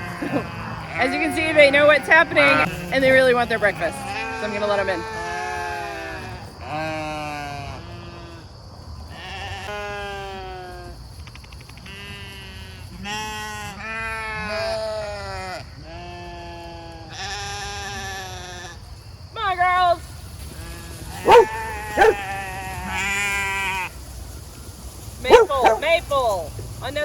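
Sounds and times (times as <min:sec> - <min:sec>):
flock of sheep bleating: 0:00.0 - 0:08.4, 0:09.1 - 0:10.9, 0:11.8 - 0:18.8.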